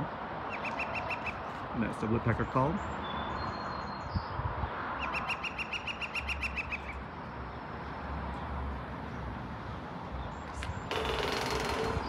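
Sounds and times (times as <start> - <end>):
woodpecker calling: 0.5 - 1.6, 5.0 - 7.0, 10.5 - 12.0.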